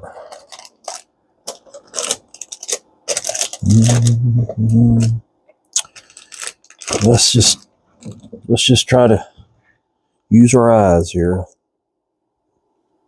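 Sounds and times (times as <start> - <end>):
small objects clattering on workbench: 0.2 - 3.6
short low hums: 3.6 - 5.2.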